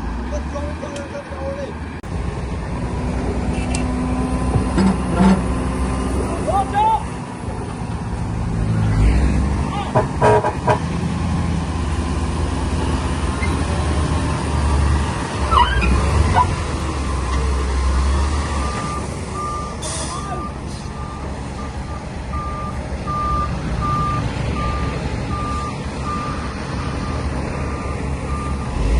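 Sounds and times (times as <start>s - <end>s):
diesel engine running: 0.0s - 28.9s
reversing alarm beeping: 18.6s - 28.9s.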